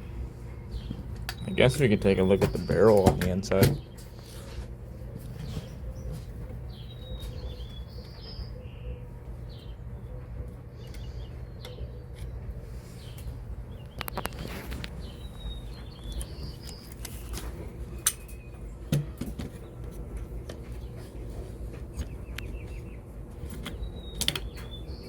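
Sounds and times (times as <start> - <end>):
steady low hum: 0.0 - 25.0
clicks and clinks of parts: 18.0 - 18.4.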